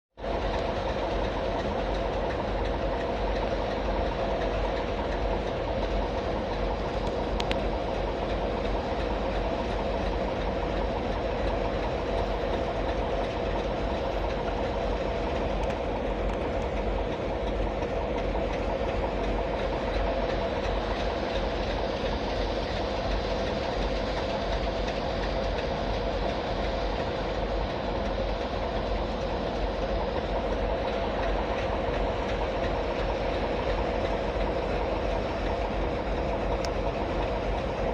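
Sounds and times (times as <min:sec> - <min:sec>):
diesel locomotive engine idling: 0:00.2 - 0:37.9.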